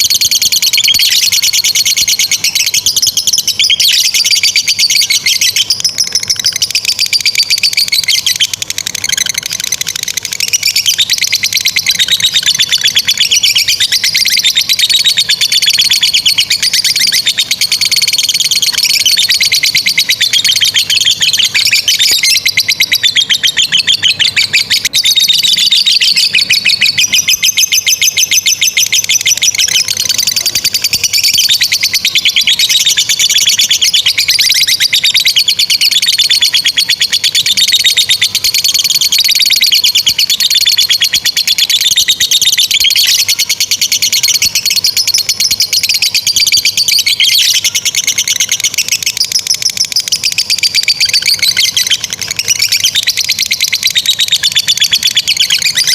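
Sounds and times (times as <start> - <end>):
lovebird chattering trill: 0.0 - 55.9.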